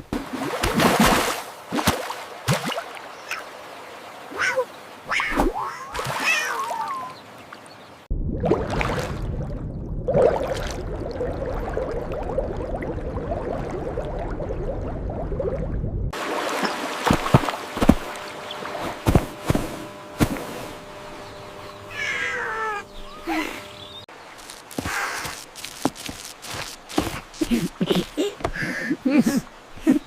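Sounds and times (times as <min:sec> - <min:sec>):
cat meowing: 0:21.9 - 0:22.9.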